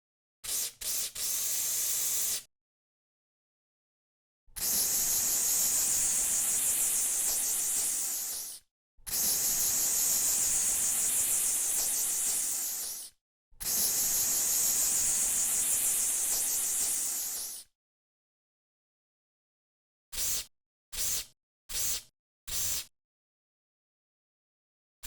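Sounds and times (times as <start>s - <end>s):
aerosol spray hissing: 4.6s - 8.6s, 9.2s - 13.1s, 13.7s - 17.6s, 20.2s - 22.9s.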